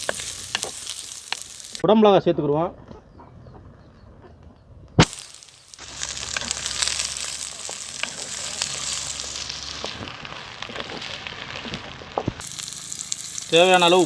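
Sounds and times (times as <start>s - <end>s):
oil crackles and pops: 0.0s - 1.8s, 4.9s - 14.0s
vegetables sizzling in hot oil: 0.0s - 1.8s, 5.0s - 14.0s.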